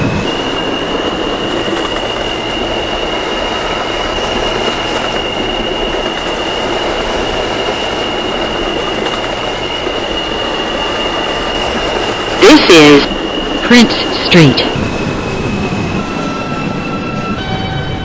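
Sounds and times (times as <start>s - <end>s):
wheels rumbling on rail: 0.0s - 18.0s.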